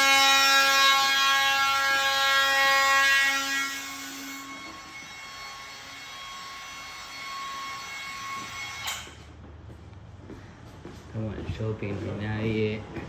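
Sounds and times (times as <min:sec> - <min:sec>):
electric saw whining: 0:00.0 - 0:09.3.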